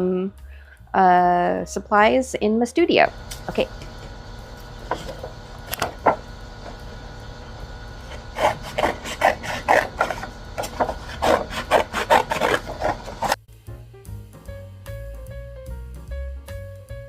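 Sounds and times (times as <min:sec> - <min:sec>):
scissors cutting paper: 0:08.0 - 0:13.4.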